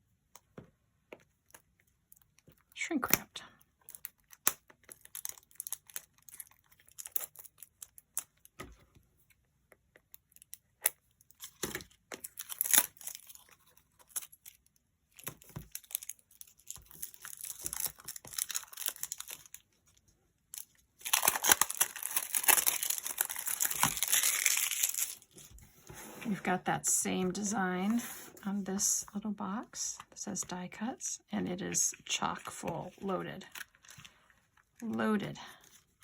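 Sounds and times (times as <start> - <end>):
plastic shrink wrap crinkling: 3.8 - 8.5, 12.1 - 25.5.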